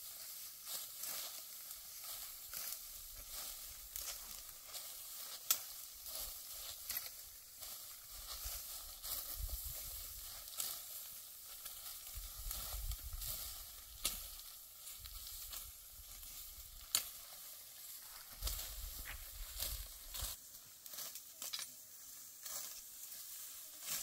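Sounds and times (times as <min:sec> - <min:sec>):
dry stalks crackling and rustling: 0:00.0 - 0:24.0
stalks snapping: 0:05.4 - 0:05.8.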